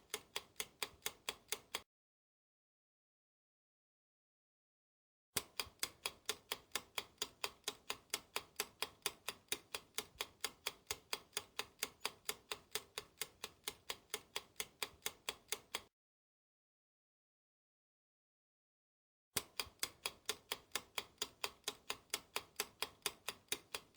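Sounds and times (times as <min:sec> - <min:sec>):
clock ticking: 0:00.0 - 0:01.8, 0:05.4 - 0:15.9, 0:19.4 - 0:23.9.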